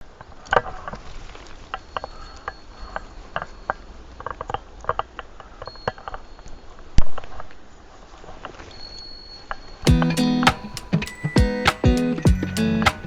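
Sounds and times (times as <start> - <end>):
faint high steady tone: 8.8 - 13.0.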